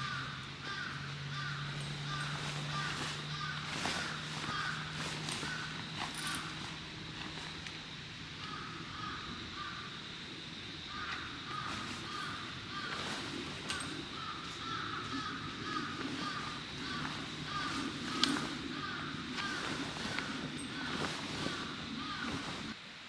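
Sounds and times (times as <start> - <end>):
birds calling: 0.0 - 22.8.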